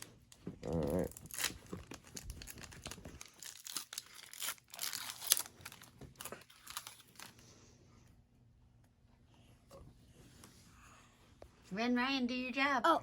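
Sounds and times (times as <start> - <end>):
foil wrapper crinkling and tearing: 0.7 - 7.4.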